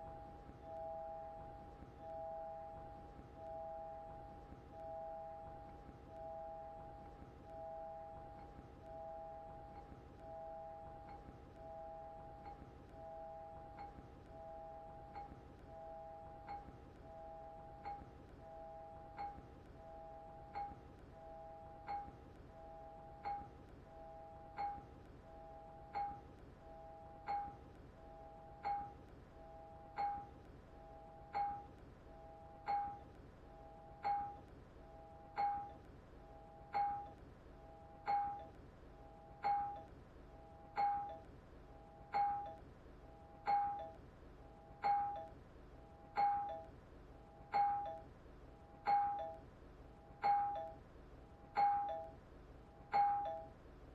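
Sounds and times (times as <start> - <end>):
two-tone doorbell chime: 0.1 - 4.2, 4.8 - 27.6, 29.6 - 31.7, 32.3 - 33.0, 33.6 - 34.4, 35.0 - 35.8, 36.4 - 37.2, 37.8 - 38.6, 39.2 - 39.9, 40.6 - 41.3, 42.0 - 42.6, 43.3 - 44.0, 44.8 - 45.4, 46.1 - 46.7, 47.5 - 48.2, 48.8 - 49.5, 50.2 - 50.9, 51.5 - 52.2, 52.9 - 53.6.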